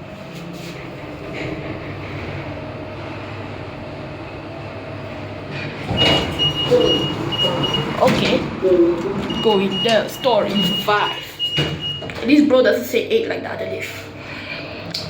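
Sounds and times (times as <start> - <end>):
high beeps: 9.3 - 12.1.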